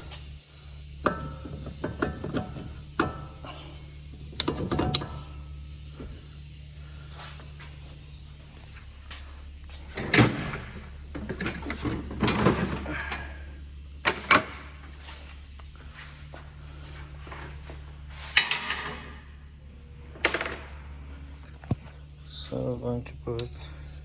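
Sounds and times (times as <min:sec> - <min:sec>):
steady low hum: 0:00.0 - 0:24.0
hand tools and metal parts clattering: 0:00.9 - 0:05.4, 0:09.0 - 0:13.4, 0:16.0 - 0:19.3.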